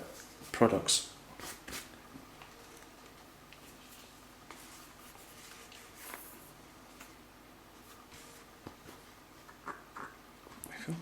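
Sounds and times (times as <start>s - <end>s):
soft rustle of handling: 1.4s - 9.3s.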